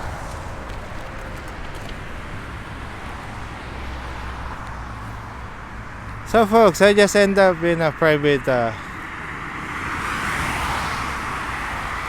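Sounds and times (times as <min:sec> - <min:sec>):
wind buffeting microphone: 0:00.0 - 0:06.2.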